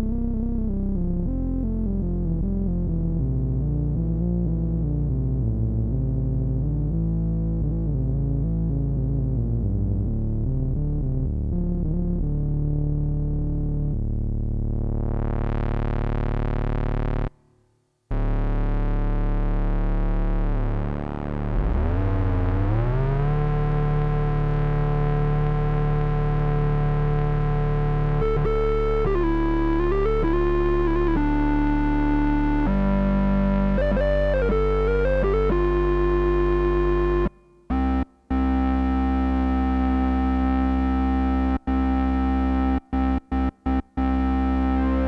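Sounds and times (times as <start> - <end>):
synthesizer melody: 28.2 - 45.0.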